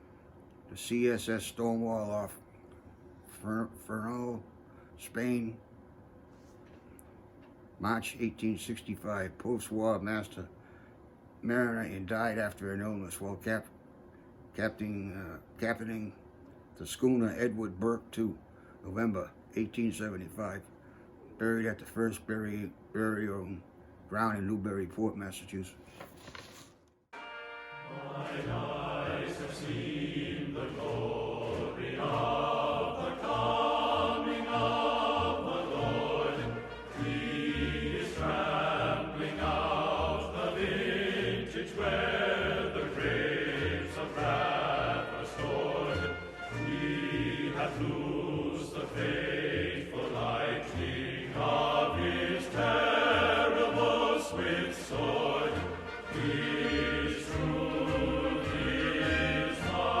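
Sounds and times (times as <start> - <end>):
choir singing: 27.4 - 60.0.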